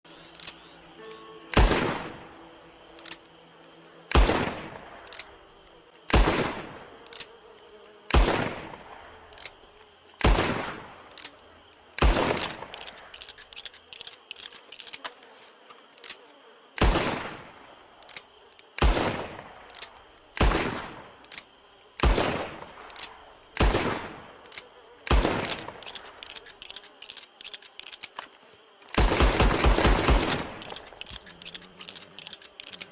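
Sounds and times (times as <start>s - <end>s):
light clicks: 0.2s - 1.6s, 2.9s - 4.0s, 5.0s - 5.4s, 7.0s - 8.2s, 9.2s - 10.3s, 11.0s - 16.2s, 18.0s - 18.9s, 19.6s - 20.5s, 21.2s - 21.9s, 24.4s - 24.7s, 25.4s - 29.0s, 30.3s - 32.9s
revolver gunshots: 1.5s - 2.2s, 4.1s - 5.0s, 6.1s - 6.8s.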